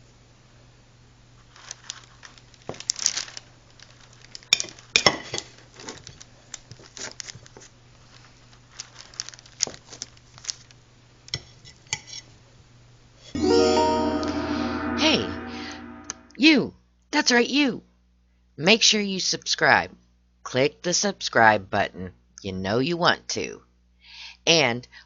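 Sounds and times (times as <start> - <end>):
crinkling: 1.4 - 4.9, 5.7 - 10.8.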